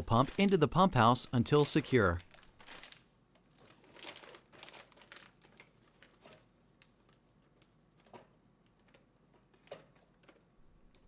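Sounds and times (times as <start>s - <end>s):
plastic bag rustling: 0.0s - 8.1s.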